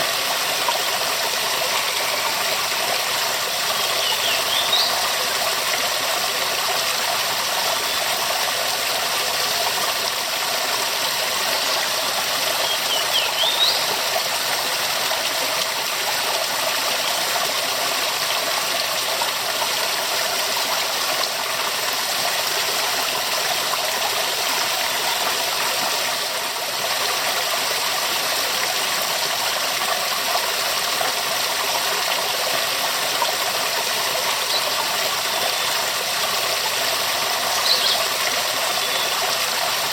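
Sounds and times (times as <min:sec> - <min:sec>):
waterfall rushing: 0:00.0 - 0:16.3.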